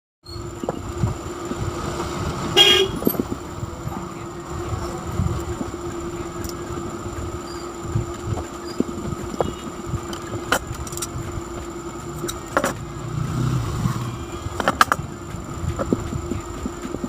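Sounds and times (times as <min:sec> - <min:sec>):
electric fan motor humming: 0:00.3 - 0:17.0
sharp clicks and knocks: 0:08.1 - 0:12.9, 0:14.5 - 0:17.0.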